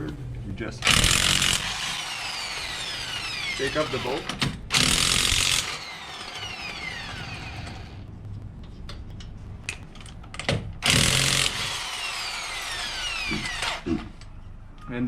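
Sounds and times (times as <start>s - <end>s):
power tool loud burst: 0.8s - 8.0s, 10.8s - 13.9s
power tool motor whine: 0.8s - 8.0s, 10.8s - 13.9s.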